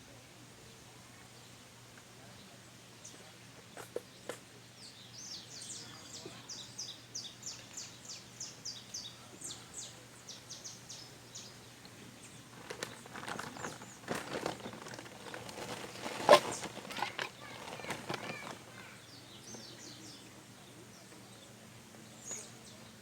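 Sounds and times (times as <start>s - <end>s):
outdoor background noise: 0.0s - 23.0s
rustling and clicks: 12.5s - 18.9s.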